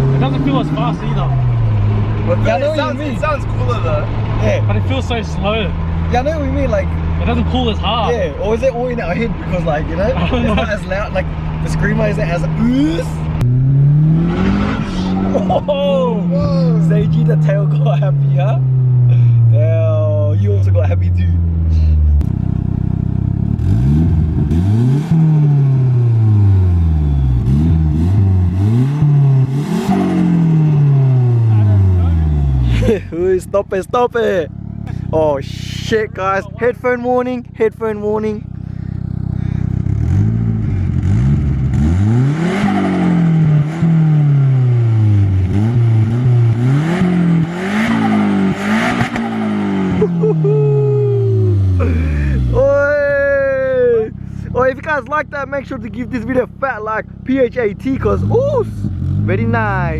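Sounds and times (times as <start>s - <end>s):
car engine revving hard: 0.0s - 19.6s, 23.4s - 33.0s, 39.0s - 50.4s.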